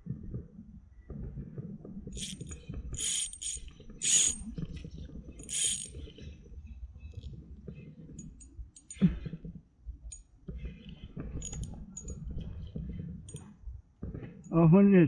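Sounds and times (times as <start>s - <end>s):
fishing reel whirring: 2.2s - 4.6s, 5.4s - 6.0s.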